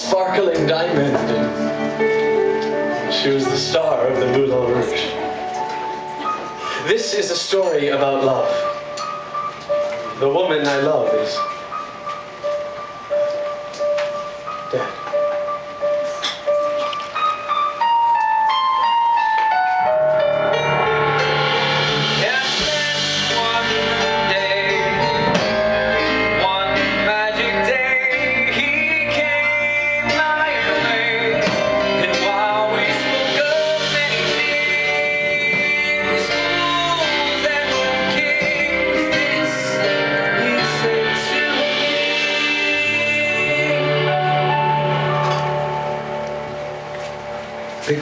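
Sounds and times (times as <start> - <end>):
live band playing: 0.0 - 48.0
wordless singing: 21.1 - 46.8.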